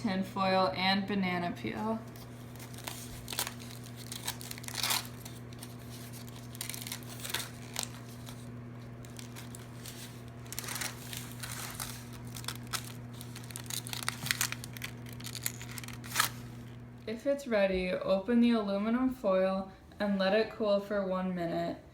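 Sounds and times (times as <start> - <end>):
steady low hum: 0.0 - 21.9
aluminium foil crinkling: 2.1 - 16.8.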